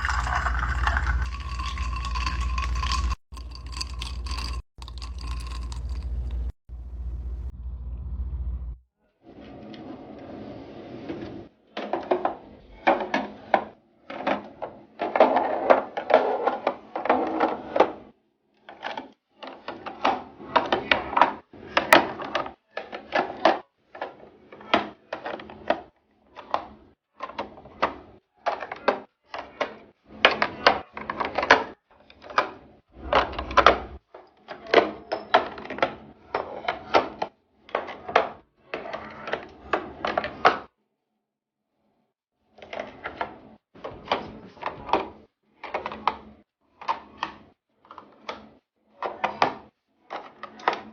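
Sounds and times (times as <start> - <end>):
containers clicking and clattering: 0.0 - 6.6.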